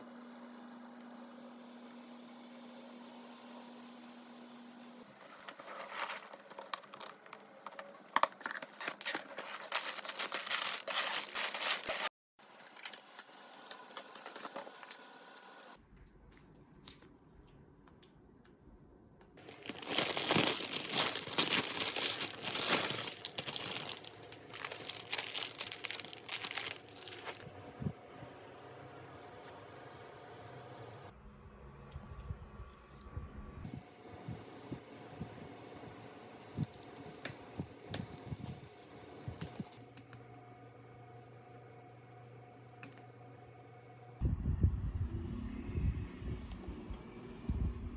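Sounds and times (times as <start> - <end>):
packaging crinkling and tearing: 5.1 - 15.8, 19.4 - 27.5.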